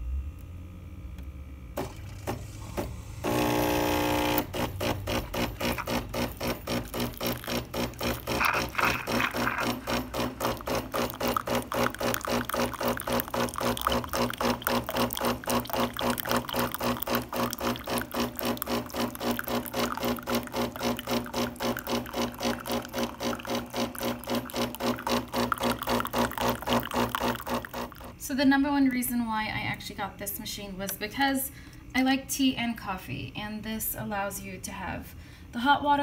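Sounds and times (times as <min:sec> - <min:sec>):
coffee machine pump buzzing: 0:01.2 - 0:28.4.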